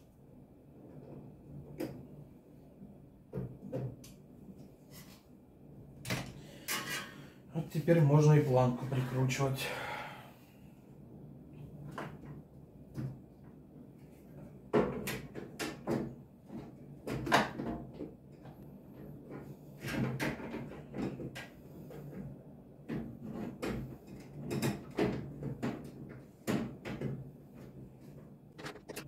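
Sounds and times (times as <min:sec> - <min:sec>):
knocks and clatter of machine parts: 0:11.8 - 0:29.0.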